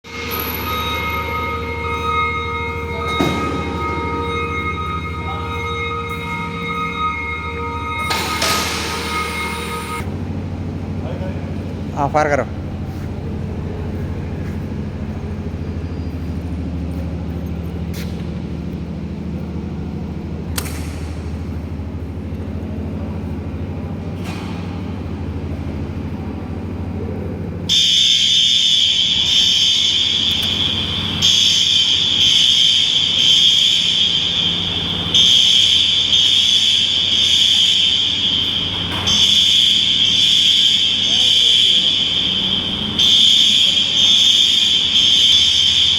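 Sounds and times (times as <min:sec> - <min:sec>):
fire alarm high tone: 0:00.0 - 0:10.1, 0:27.7 - 0:45.9
low hum: 0:00.0 - 0:45.9.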